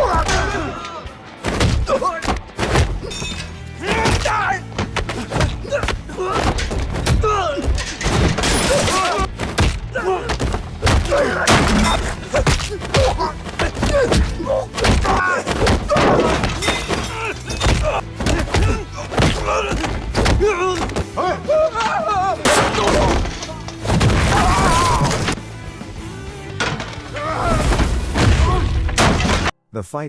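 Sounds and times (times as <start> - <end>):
shouts and grunts: 0.0 - 1.2, 3.8 - 7.8, 8.6 - 25.3
dramatic score music: 0.0 - 29.5
punch and kick impacts: 1.4 - 3.1, 3.8 - 21.2.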